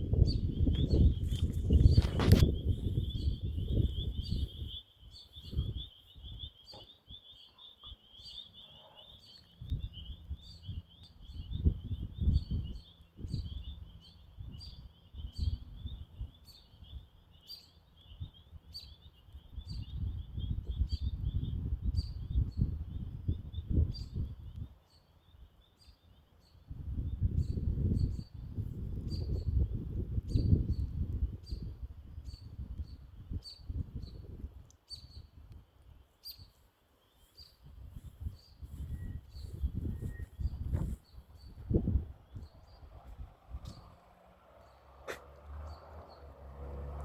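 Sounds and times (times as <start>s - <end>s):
wind buffeting microphone: 0.0s - 4.8s, 5.4s - 6.5s, 9.6s - 17.1s, 19.6s - 24.7s, 26.7s - 35.6s, 37.6s - 47.0s.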